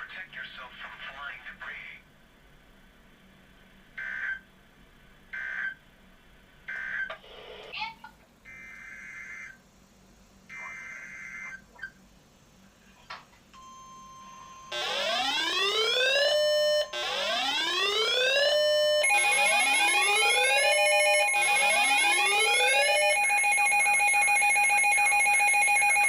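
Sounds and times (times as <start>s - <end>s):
two-tone emergency attention signal: 18.6s - 26.0s.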